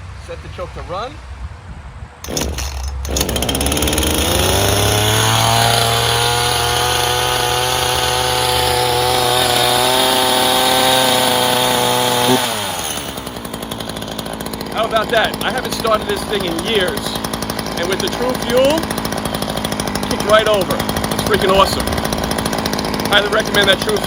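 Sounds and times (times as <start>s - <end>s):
starter cord pull: 2.2s - 6.9s
chainsaw engine revving: 2.2s - 24.0s.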